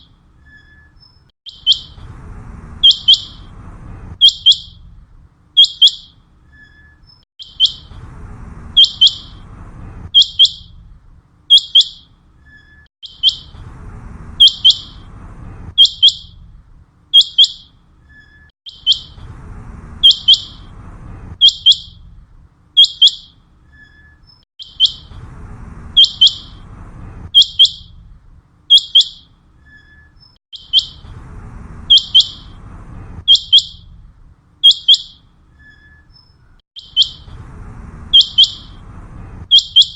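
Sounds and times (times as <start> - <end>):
quail calling: 1.5 - 2.0, 2.8 - 3.5, 26.0 - 26.6, 31.9 - 32.6, 34.6 - 35.2, 36.8 - 37.3, 38.1 - 38.8
low rumbling background: 1.8 - 5.6, 7.8 - 11.5, 13.3 - 17.1, 19.0 - 22.8, 24.9 - 28.7, 30.9 - 34.6, 37.2 - 39.6.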